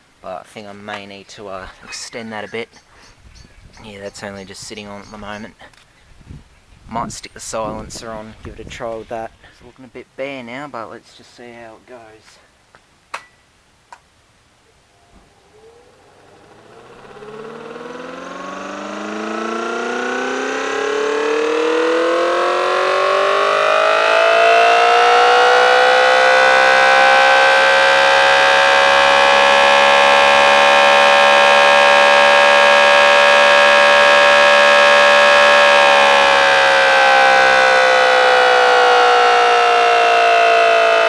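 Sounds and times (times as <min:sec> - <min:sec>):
two-tone siren wailing: 0:14.9 - 0:41.0.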